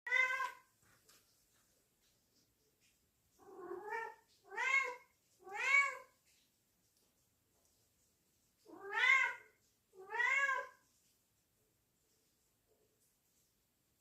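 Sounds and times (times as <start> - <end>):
cat meowing: 0.1 - 0.7, 3.4 - 6.1, 8.7 - 10.8.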